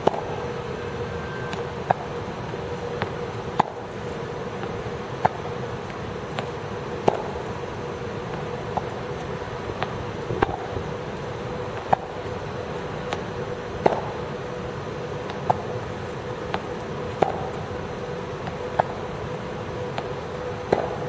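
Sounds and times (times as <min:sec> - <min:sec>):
steady hum: 0:00.0 - 0:21.0
tennis balls hit by rackets: 0:06.4 - 0:07.3, 0:16.5 - 0:17.6, 0:20.7 - 0:21.0
tennis balls bouncing on court: 0:16.5 - 0:17.6, 0:20.7 - 0:21.0.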